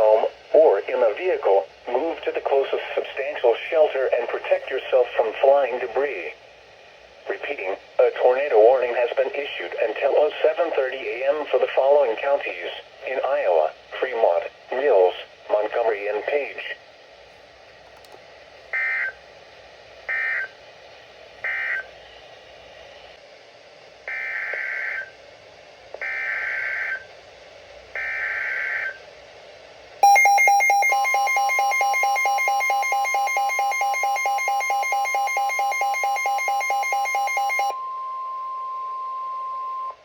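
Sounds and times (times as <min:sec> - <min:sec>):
pulsing electronic alarm: 0:24.1 - 0:25.1, 0:26.0 - 0:27.0, 0:28.0 - 0:29.0, 0:30.0 - 0:40.0
steady warning tone: 0:30.0 - 0:40.0.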